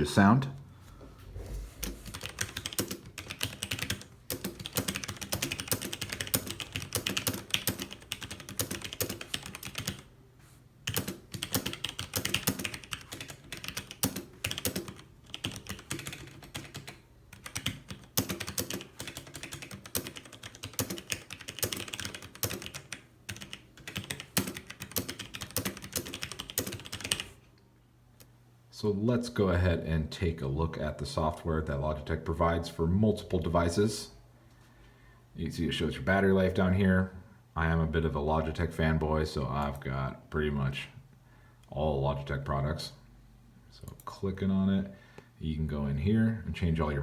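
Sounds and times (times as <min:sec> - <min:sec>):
fast typing on mechanical keyboard: 0:02.0 - 0:10.0, 0:10.9 - 0:27.3.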